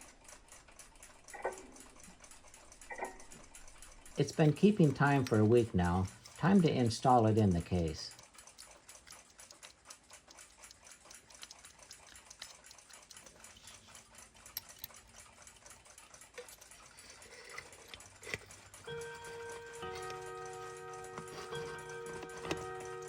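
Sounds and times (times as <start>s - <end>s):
clock ticking quickly: 0.0s - 16.9s
music: 18.9s - 23.0s.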